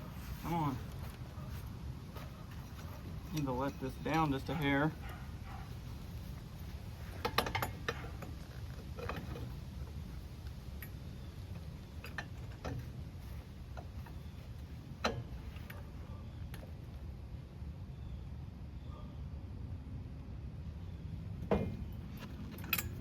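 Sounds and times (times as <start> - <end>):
light metallic clicks and knocks: 2.1 - 5.2, 7.1 - 16.8, 21.4 - 23.0.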